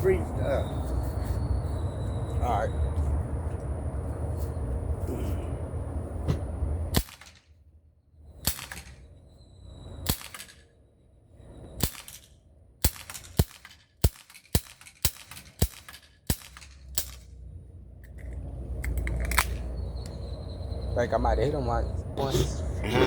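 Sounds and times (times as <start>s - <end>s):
bb pistol shots cracking: 6.9s - 7.4s, 8.4s - 9.0s, 10.0s - 10.6s, 11.8s - 17.3s.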